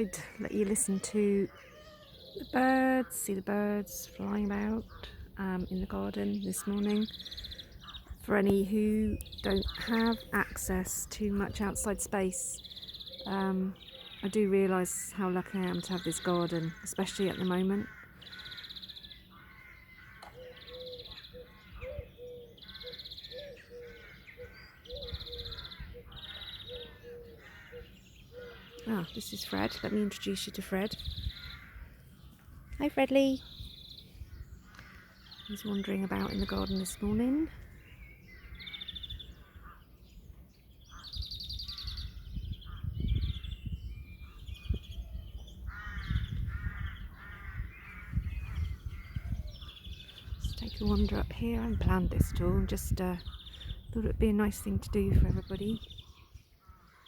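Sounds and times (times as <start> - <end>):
short low bird calls: 15.8 - 51.2.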